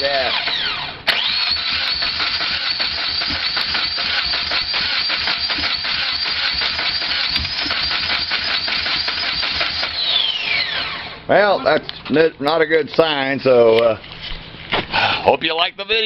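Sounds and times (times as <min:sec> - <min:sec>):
engine cranking by starter: 0:00.0 - 0:11.3.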